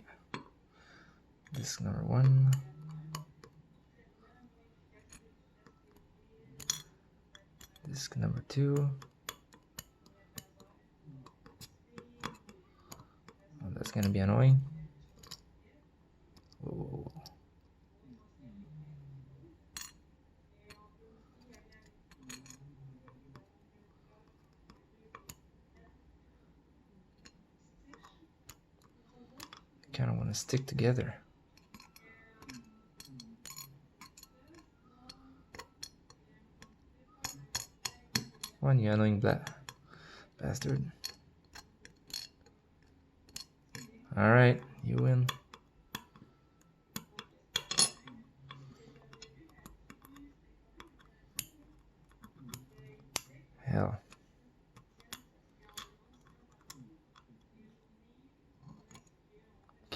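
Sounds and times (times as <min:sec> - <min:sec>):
metallic clicks of lock parts: 0:06.6 - 0:06.9, 0:19.8 - 0:20.0, 0:21.7 - 0:22.6, 0:29.4 - 0:29.7, 0:31.6 - 0:34.7, 0:35.5 - 0:38.6, 0:40.6 - 0:43.9, 0:47.0 - 0:50.2.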